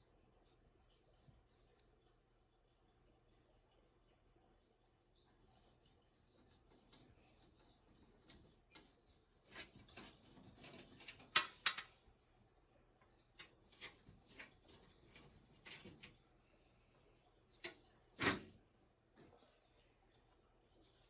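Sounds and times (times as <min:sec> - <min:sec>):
computer parts clicking and rustling: 0:06.3 - 0:12.0, 0:13.0 - 0:16.4, 0:17.5 - 0:18.6.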